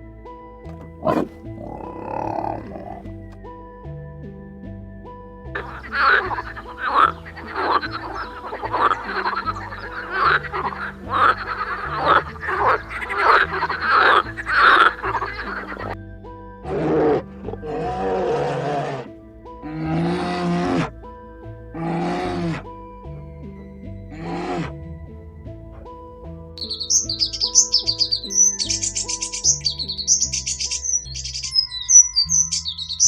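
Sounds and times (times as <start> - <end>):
background music with bass line: 0.0 - 33.0
short animal calls: 1.0 - 3.1, 5.6 - 16.0
longer animal calls: 1.0 - 3.2, 5.6 - 16.0, 16.6 - 21.0, 21.7 - 23.3, 24.0 - 24.8.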